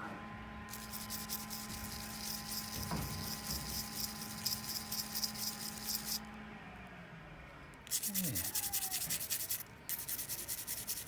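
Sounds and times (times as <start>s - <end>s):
wire brush scratching metal: 0.7s - 6.2s, 7.8s - 11.0s.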